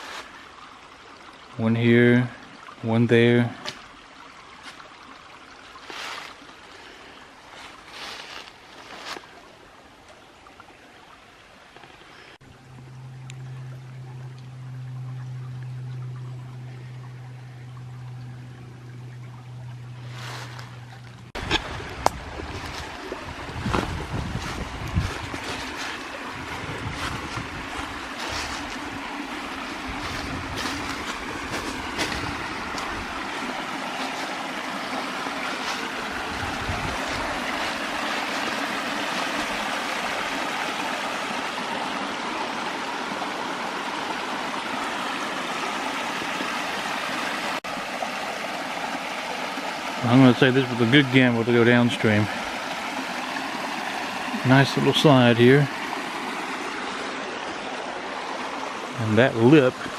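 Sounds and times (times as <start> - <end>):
creek water rushing over rocks: 0.0 - 59.9.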